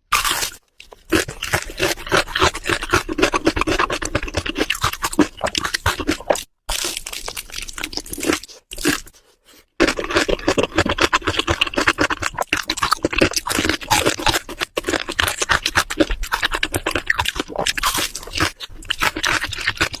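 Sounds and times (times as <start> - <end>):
crunching fried chicken: 0.1 - 20.0.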